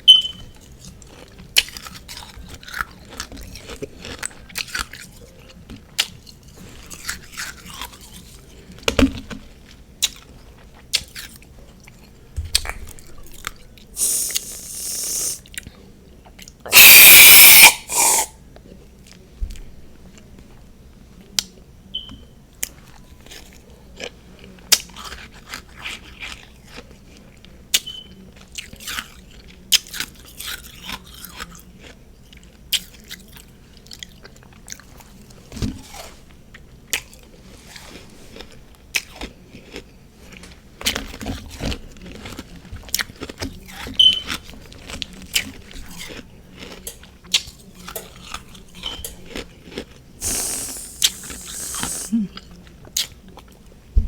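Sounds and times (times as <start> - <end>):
crunchy chewing of frost: 0.6 - 8.8, 22.6 - 27.6, 28.4 - 53.7.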